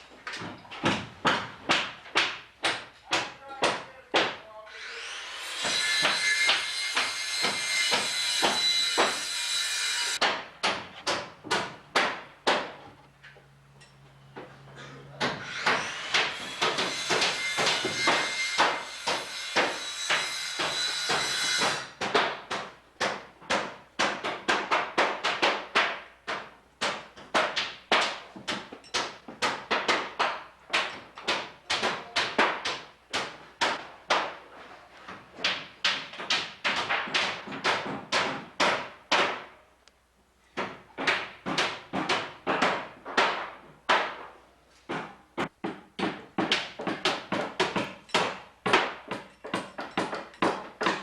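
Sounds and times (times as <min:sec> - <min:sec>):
hammer blows: 0:05.6 - 0:13.2.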